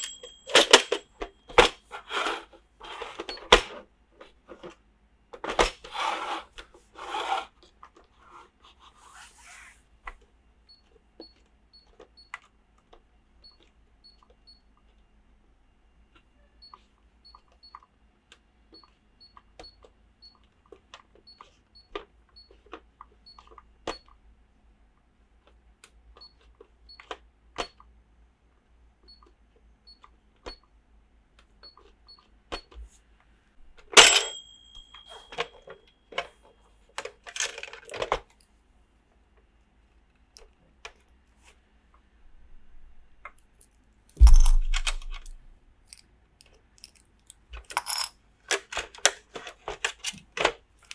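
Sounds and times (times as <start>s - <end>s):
brief ring: 0.0s - 1.0s, 34.0s - 35.4s, 44.2s - 45.4s
sharp clack: 34.0s - 35.2s, 44.2s - 45.5s
plastic toy pieces clicking: 46.8s - 50.2s.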